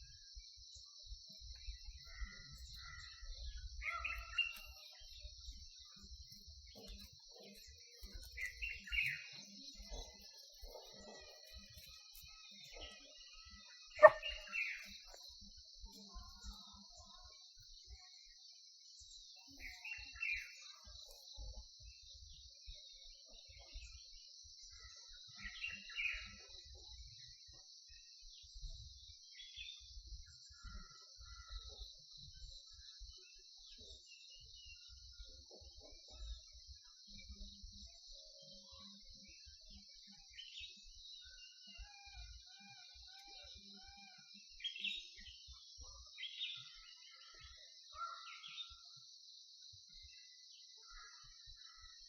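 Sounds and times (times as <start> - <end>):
insects droning: 0.0 - 52.0
bird calls: 1.6 - 5.6, 6.7 - 15.2
peacock calling: 13.8 - 14.9.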